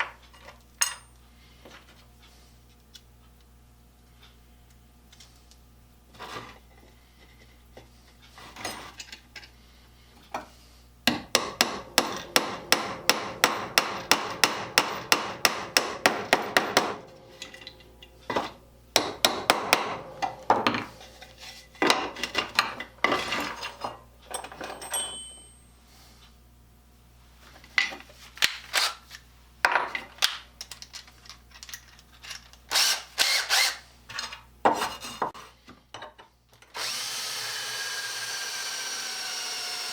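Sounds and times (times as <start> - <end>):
hammer striking metal: 11.1 - 21.1.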